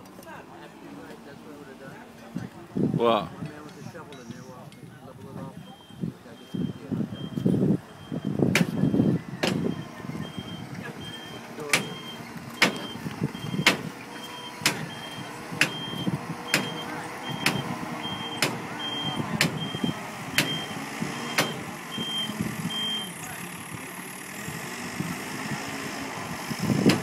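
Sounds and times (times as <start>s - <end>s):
truck engine rumble: 0.0s - 27.0s
truck reversing alarm beeping: 5.6s - 23.4s.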